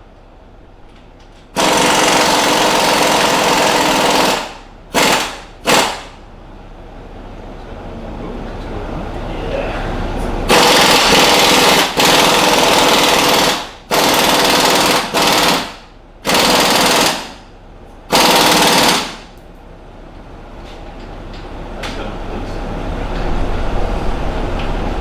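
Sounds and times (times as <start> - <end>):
impact wrench hammering: 1.5 - 6.2, 10.5 - 17.5, 18.1 - 19.4.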